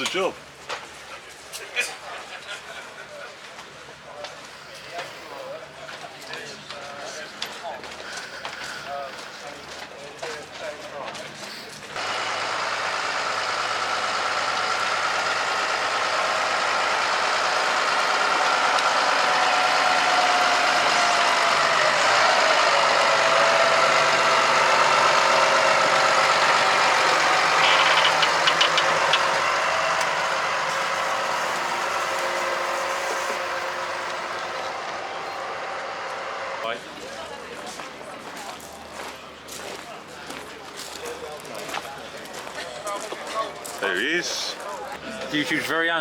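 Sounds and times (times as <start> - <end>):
vehicle engine running: 11.9 - 37.4
short rattling clicks: 23.9 - 30.8.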